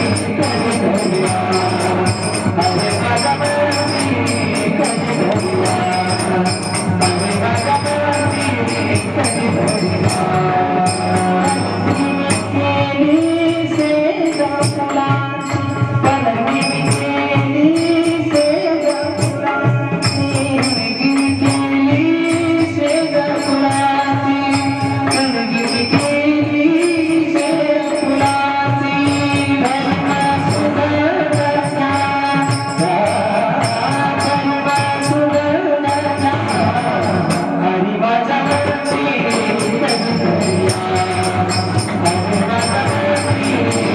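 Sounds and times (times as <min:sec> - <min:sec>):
fast drum strokes: 0:00.0 - 0:37.8, 0:38.4 - 0:43.9
devotional song melody: 0:00.0 - 0:43.9.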